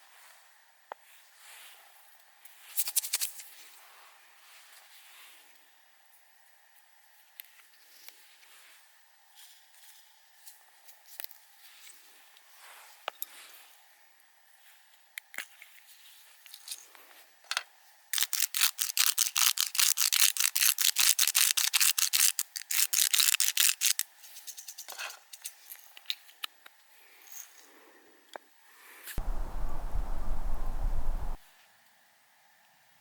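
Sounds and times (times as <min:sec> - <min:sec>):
rustling rumbling noise: 0:29.2 - 0:31.4
single clicks: 0:29.2 - 0:31.4.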